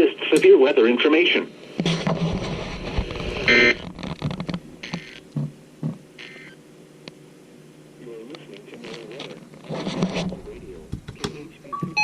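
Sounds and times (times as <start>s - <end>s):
buzzy digital data bursts: 3.4s - 3.8s.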